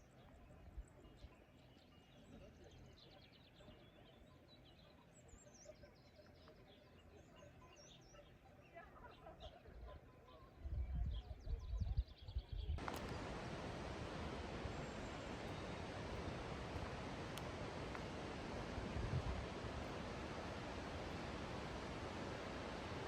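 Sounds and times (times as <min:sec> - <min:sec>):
wind rumble on microphone: 0:10.6 - 0:23.0
small birds chirping: 0:12.2 - 0:23.0
loud steady rushing noise: 0:12.8 - 0:23.0.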